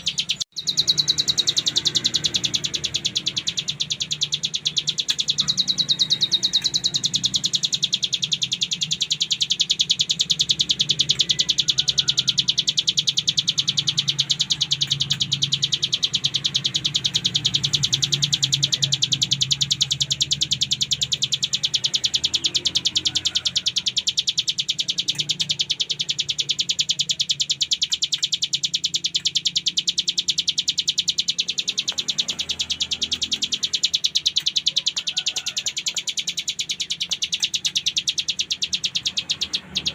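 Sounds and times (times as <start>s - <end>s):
bird singing rapid rattle: 0.0s - 39.9s.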